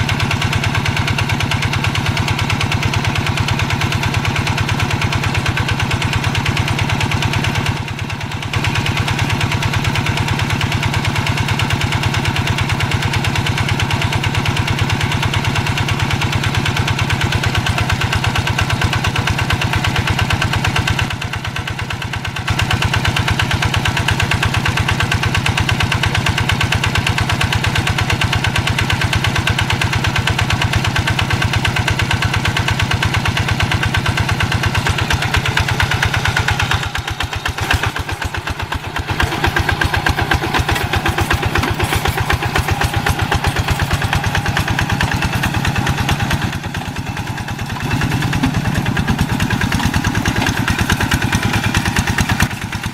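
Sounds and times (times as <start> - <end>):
hand tractor diesel engine thudding: 33.0 - 52.9.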